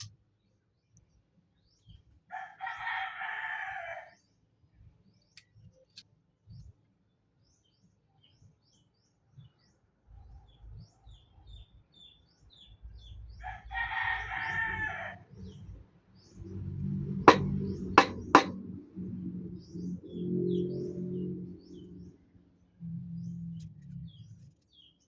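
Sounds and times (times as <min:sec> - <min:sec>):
rooster crowing: 0:02.3 - 0:04.1, 0:13.5 - 0:15.2.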